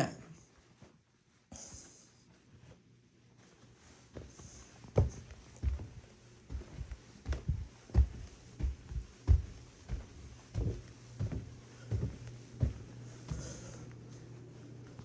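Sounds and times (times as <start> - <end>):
steady low hum: 3.8 - 15.0
footsteps thudding on floor: 4.1 - 13.8.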